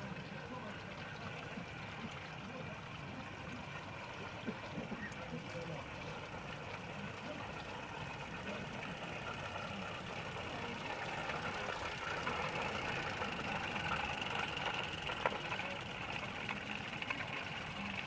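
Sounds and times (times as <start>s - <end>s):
steam locomotive hissing and chuffing: 4.1s - 18.0s.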